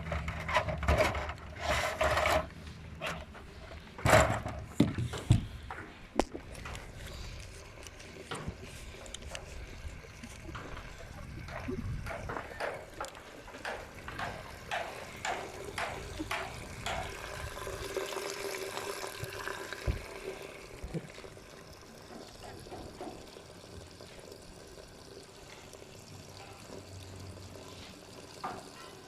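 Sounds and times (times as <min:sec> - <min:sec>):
water pouring into a container: 0:14.4 - 0:29.0.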